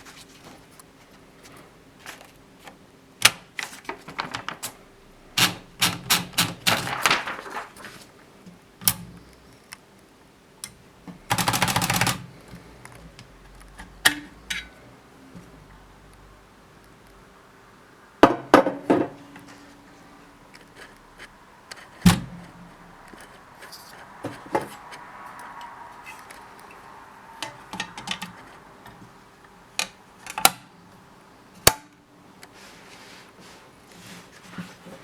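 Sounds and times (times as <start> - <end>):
typewriter clacking: 3.2 - 8.0, 11.2 - 12.6.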